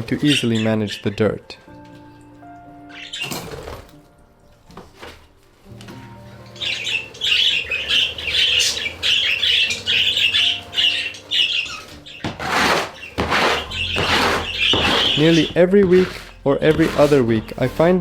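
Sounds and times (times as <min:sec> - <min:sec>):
budgerigars chattering and chirping: 0:00.0 - 0:01.3, 0:02.9 - 0:03.6, 0:06.5 - 0:16.2.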